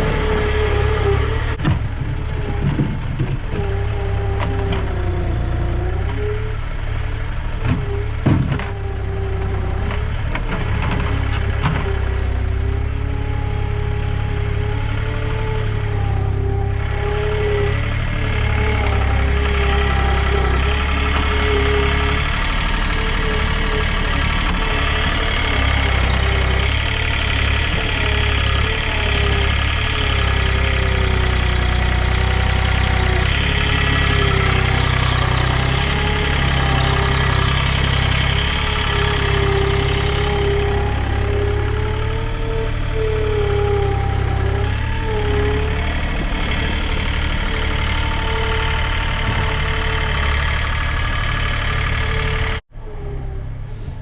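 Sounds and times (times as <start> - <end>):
engine running with whine: 0.0 - 54.0.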